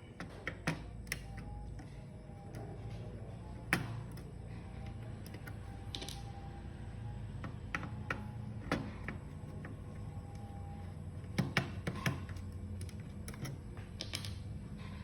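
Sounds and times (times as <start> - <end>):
plastic laptop parts clicking: 0.1 - 2.9.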